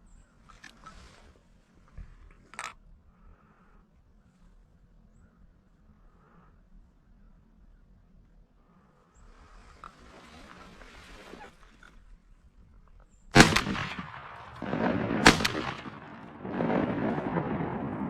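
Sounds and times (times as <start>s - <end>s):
shotgun shots: 13.4s - 18.0s.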